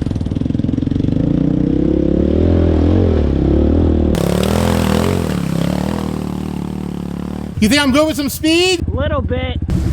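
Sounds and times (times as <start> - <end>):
vehicle engine revving: 1.4 - 8.8.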